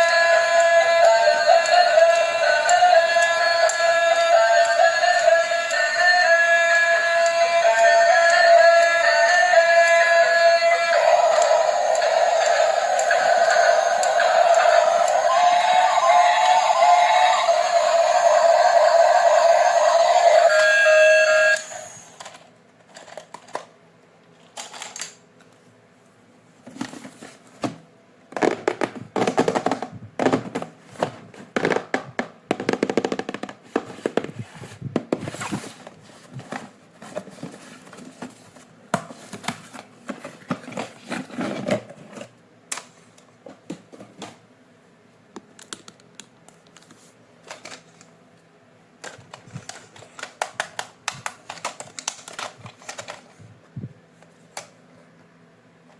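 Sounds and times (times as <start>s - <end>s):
background music with singing: 0.0s - 20.5s
toy packaging clicking and rustling: 22.1s - 23.7s, 24.4s - 25.2s, 45.5s - 48.1s, 49.0s - 53.4s.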